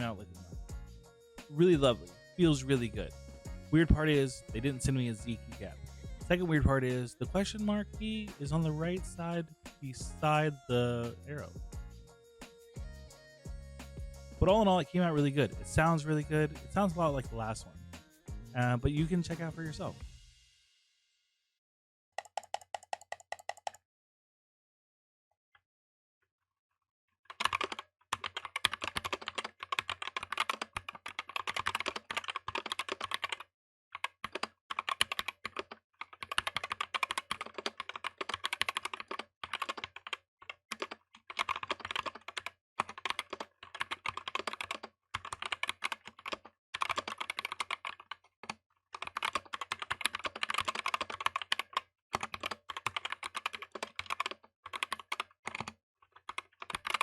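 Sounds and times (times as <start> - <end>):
mechanical keyboard typing: 22.2 - 23.8, 27.3 - 57.0.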